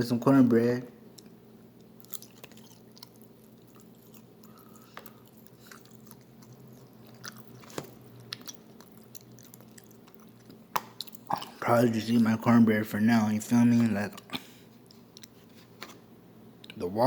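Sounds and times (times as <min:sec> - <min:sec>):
faint low hum: 0:00.0 - 0:17.0
person chewing food: 0:01.1 - 0:11.6, 0:13.7 - 0:15.7.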